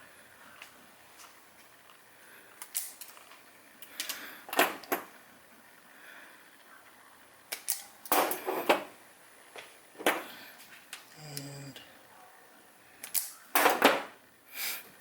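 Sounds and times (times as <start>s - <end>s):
wire strippers clicking: 2.6s - 5.0s, 7.5s - 8.4s, 13.0s - 13.8s.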